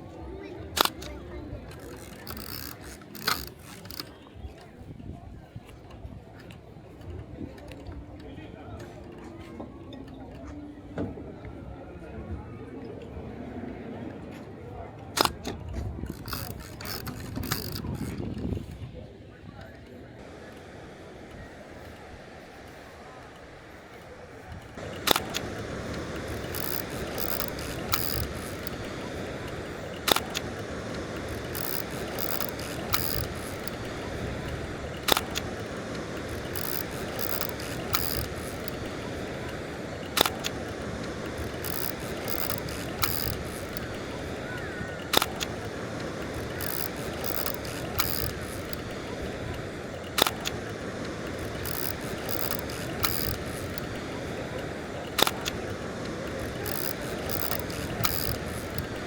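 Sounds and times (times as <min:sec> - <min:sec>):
outdoor background noise: 0:00.0 - 0:59.0
steady background noise: 0:00.0 - 0:59.0
film-advance crank ratcheting: 0:00.1 - 0:04.3, 0:15.2 - 0:18.7, 0:20.2 - 0:59.0
camera shutter clicks: 0:24.9 - 0:34.1, 0:35.0 - 0:38.8, 0:40.1 - 0:40.6, 0:55.2 - 0:59.0.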